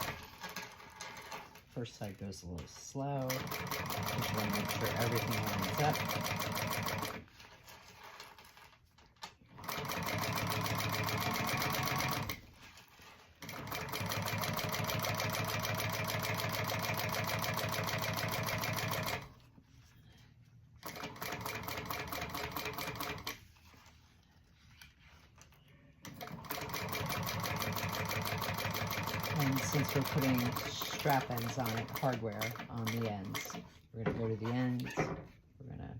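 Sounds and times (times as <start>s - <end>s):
sewing machine stitching: 0.0s - 1.6s, 3.2s - 8.8s, 9.5s - 19.4s, 20.8s - 23.4s, 26.0s - 34.9s.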